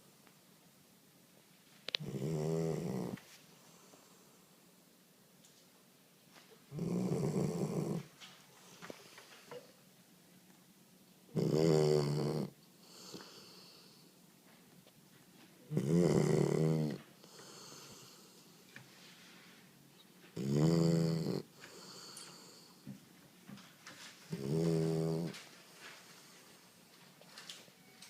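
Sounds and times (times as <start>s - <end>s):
dog snoring: 2.0s - 3.2s, 6.7s - 8.1s, 11.3s - 14.0s, 15.7s - 18.4s, 20.4s - 22.8s, 24.3s - 25.4s.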